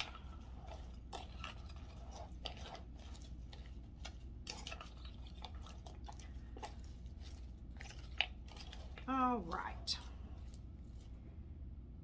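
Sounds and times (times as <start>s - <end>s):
salad being stirred: 0.0s - 11.3s.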